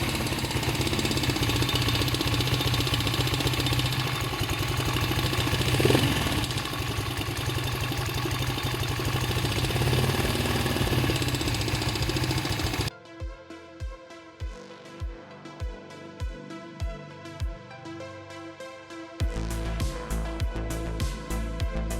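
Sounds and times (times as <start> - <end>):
motorcycle engine idling: 0.0 - 12.9.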